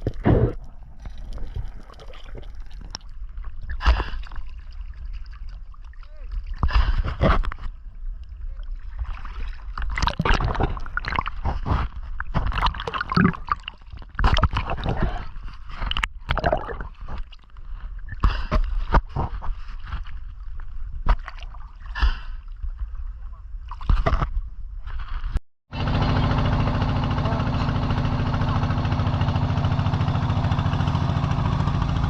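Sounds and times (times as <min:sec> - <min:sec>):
water sloshing and gurgling: 0:00.0 - 0:25.4
low steady rumble: 0:00.0 - 0:32.0.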